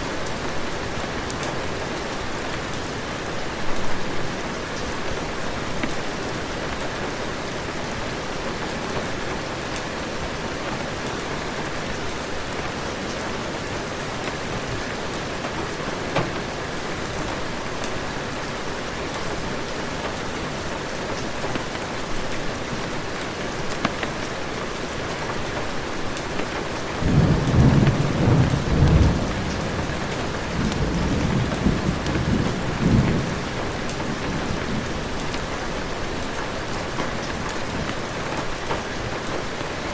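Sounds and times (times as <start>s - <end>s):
heavy rain falling: 0.0s - 39.9s
low rumble of thunder: 26.9s - 35.4s.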